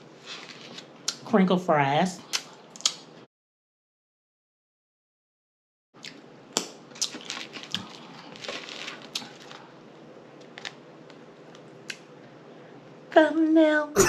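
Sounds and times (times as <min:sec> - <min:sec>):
crinkling of handled objects: 0:06.9 - 0:09.7, 0:10.4 - 0:11.7.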